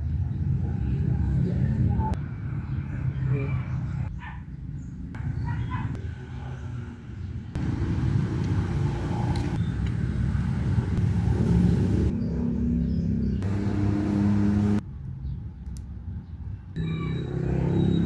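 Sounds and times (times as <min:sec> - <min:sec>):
motorcycle engine running: 0:07.6 - 0:14.8.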